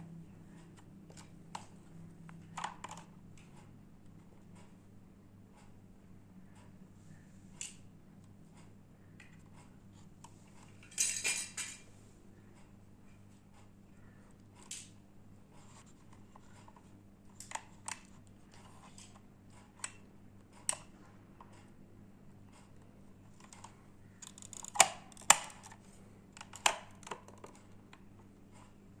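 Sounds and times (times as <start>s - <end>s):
plastic toy pieces clicking: 24.2s - 25.8s.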